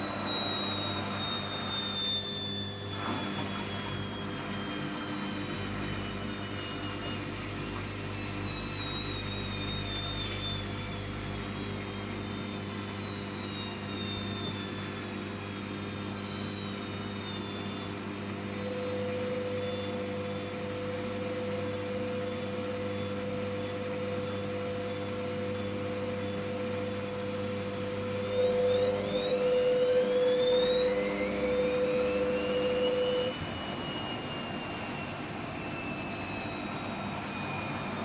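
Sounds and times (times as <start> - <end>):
steady mid-pitched tone: 0.0 - 18.6, 30.0 - 38.0
washing machine spinning: 0.0 - 38.0.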